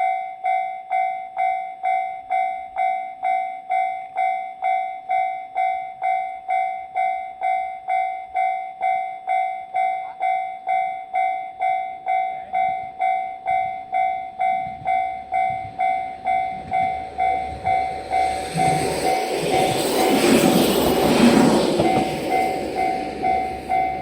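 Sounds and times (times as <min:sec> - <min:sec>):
level-crossing alarm ringing: 0:00.0 - 0:24.0
approaching train rumble: 0:12.1 - 0:24.0.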